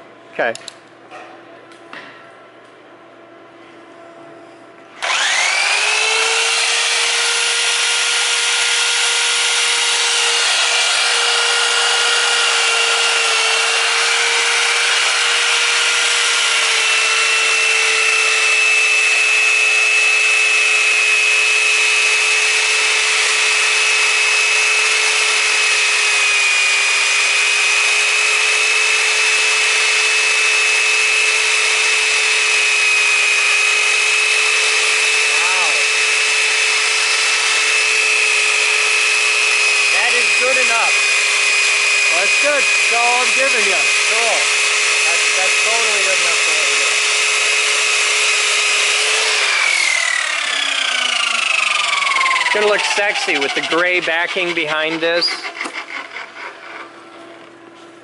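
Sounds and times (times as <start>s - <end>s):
buffing machine whine: 4.9s - 58.0s
metal rubbing on buffing wheel: 52.5s - 57.1s.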